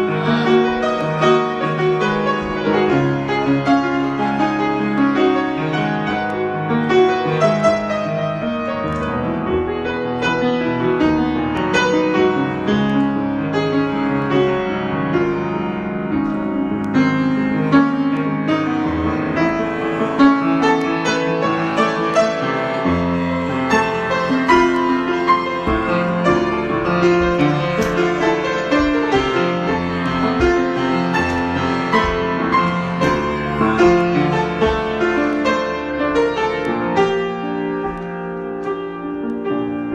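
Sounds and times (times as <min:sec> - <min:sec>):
solo piano: 0:00.0 - 0:39.9.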